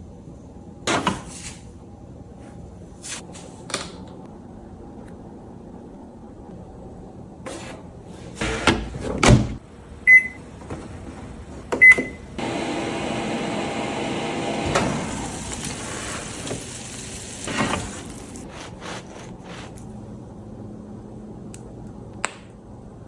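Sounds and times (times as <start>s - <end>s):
microwave oven humming: 9.6s - 22.0s
keypad beeps: 10.1s - 10.4s
microwave door shutting: 14.5s - 15.6s.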